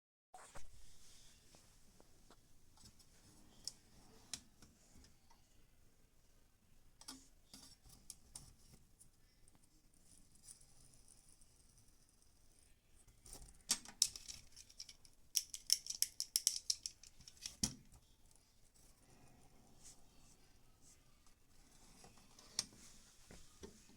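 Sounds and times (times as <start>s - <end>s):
hard objects clicking: 13.8s - 17.8s.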